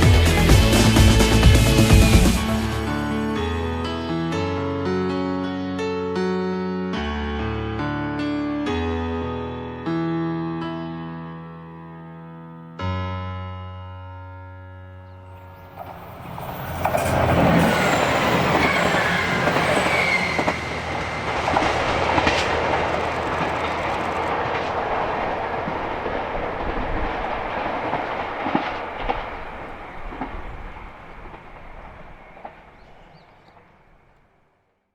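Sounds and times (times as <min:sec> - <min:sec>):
diesel train passing: 0:00.0 - 0:04.3, 0:15.3 - 0:34.6
wheels clattering over rail joints: 0:15.4 - 0:33.7
wheel squeals: 0:15.5 - 0:24.3.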